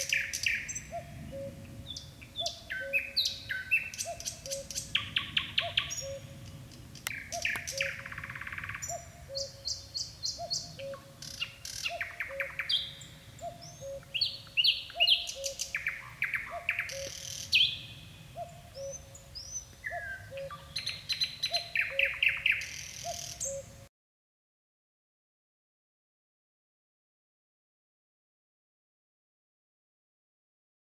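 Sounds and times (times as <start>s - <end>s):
nightingale singing: 0.0s - 23.9s.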